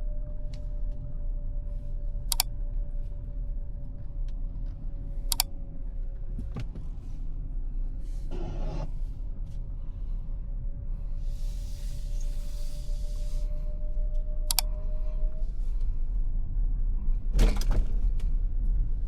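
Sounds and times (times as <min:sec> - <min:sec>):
faint steady hum: 0:00.0 - 0:19.0
low road rumble: 0:00.0 - 0:19.0
sharp clicks: 0:14.5 - 0:14.7.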